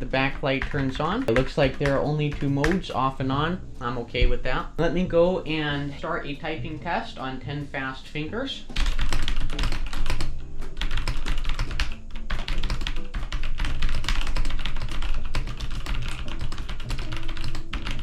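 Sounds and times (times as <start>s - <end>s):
fast mechanical keyboard typing: 0.5s - 3.2s, 8.8s - 18.0s.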